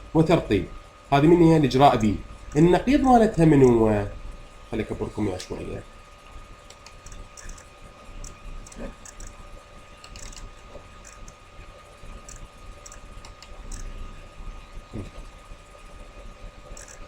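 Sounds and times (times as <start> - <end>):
faint electrical hum: 0.0 - 17.0
computer mouse and keyboard clicking: 6.7 - 9.4, 10.0 - 11.4, 12.2 - 13.9, 16.8 - 17.0.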